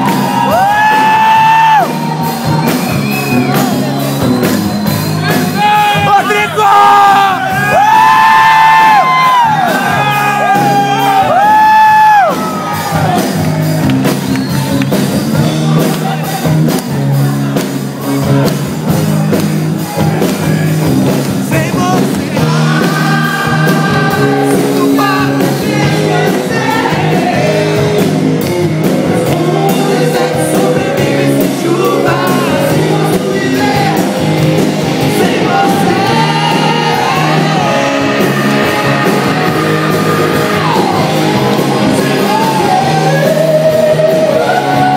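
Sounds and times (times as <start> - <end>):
rock band playing live: 0.0 - 44.9
person singing: 21.5 - 44.9.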